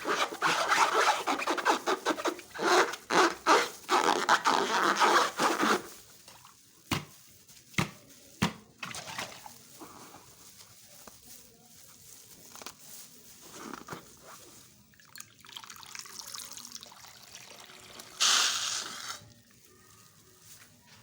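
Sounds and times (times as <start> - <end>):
slime being poured and mixed: 0.0 - 11.7, 12.4 - 21.0
hissing liquid pour: 14.9 - 19.3.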